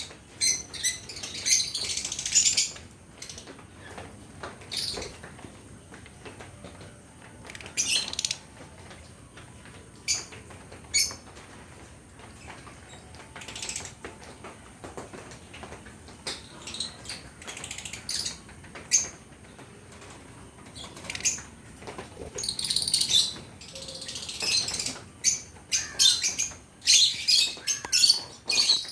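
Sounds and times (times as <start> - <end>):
lovebirds chirping shrilly: 22.4 - 28.9.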